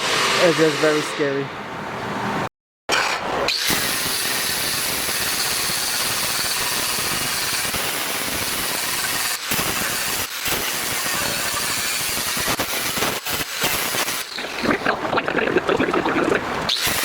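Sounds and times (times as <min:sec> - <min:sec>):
angle grinder grinding metal: 0:00.0 - 0:01.4, 0:03.5 - 0:14.5.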